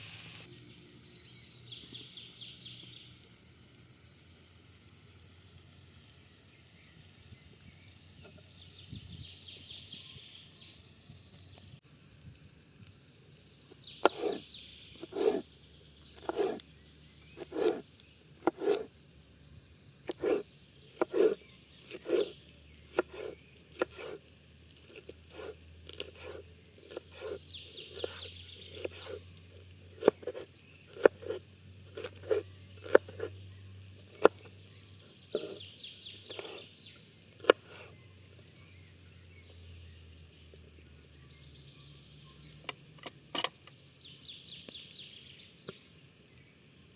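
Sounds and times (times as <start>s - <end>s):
knife chopping on wooden board: 14.0s - 14.4s, 15.0s - 15.4s, 16.2s - 16.6s, 17.4s - 17.8s, 18.4s - 18.9s, 20.1s - 20.4s, 21.0s - 22.3s, 22.9s - 24.2s, 29.9s - 33.3s.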